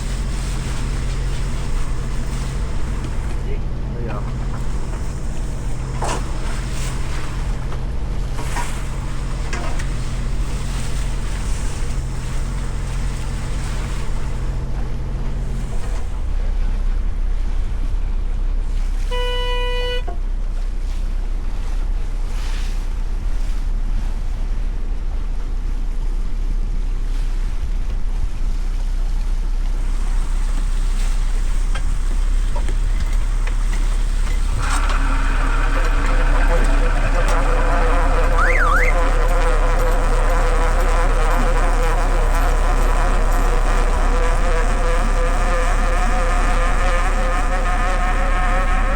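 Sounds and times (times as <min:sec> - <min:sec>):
boat engine running: 0:00.0 - 0:48.9
water noise around hull: 0:00.0 - 0:48.9
short beep: 0:19.1 - 0:20.2, 0:38.3 - 0:39.2.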